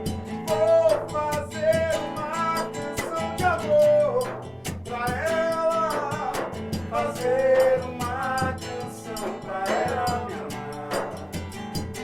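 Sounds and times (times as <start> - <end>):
sharp percussion strokes: 0.0 - 12.0.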